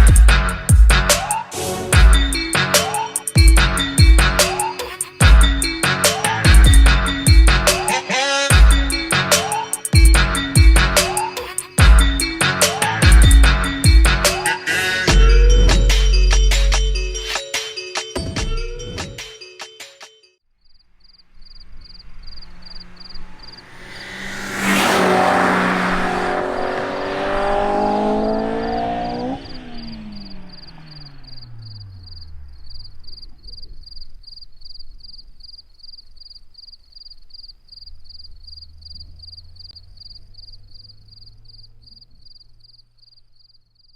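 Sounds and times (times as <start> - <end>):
car driving past: 21.3 - 33.2.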